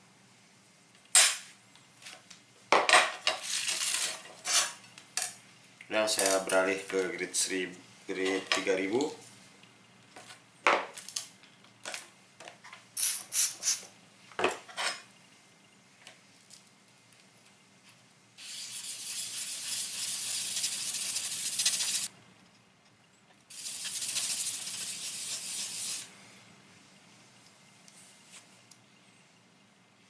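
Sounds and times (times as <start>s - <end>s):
steel rasping on sharpening plate: 18.4s - 22.1s.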